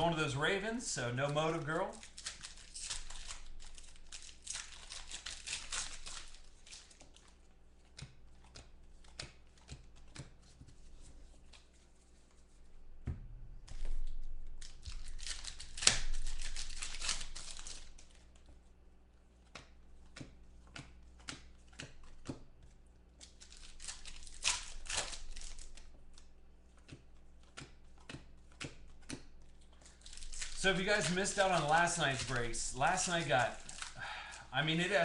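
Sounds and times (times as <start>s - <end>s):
wrappers tearing and crinkling: 1.2s - 7.4s, 13.7s - 18.4s, 23.2s - 26.3s, 28.7s - 35.0s
cards clicking: 23.2s - 35.0s.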